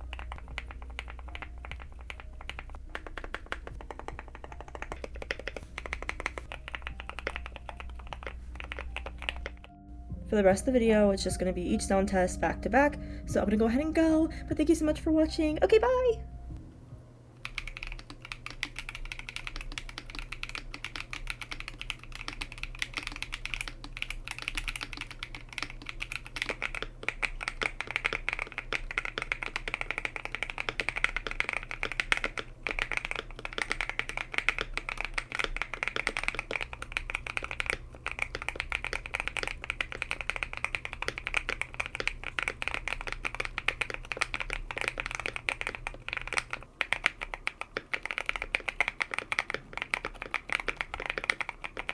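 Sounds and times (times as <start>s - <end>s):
mechanical keyboard typing: 0.0s - 9.8s, 17.4s - 51.9s
steady low hum: 0.0s - 20.6s.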